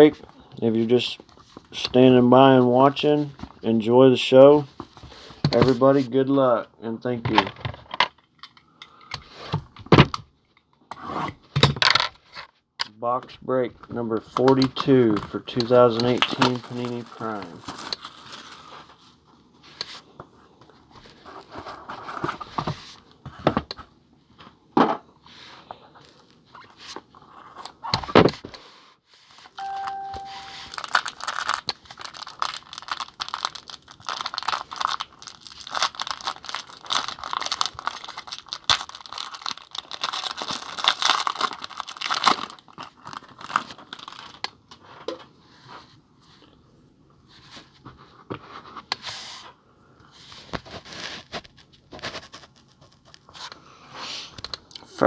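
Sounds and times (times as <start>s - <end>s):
wrapping tearing and crinkling: 14.4s - 19.0s, 29.4s - 44.6s
short beep: 29.6s - 30.8s.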